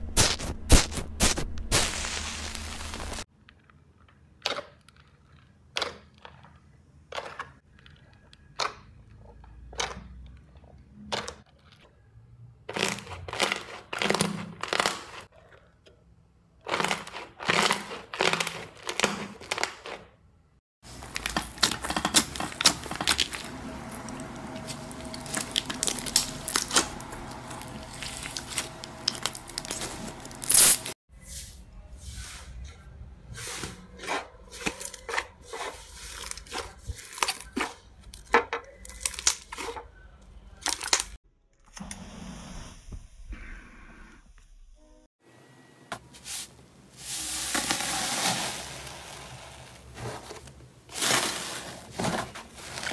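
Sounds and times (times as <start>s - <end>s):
slime crackling and popping: 20.9s - 30.9s.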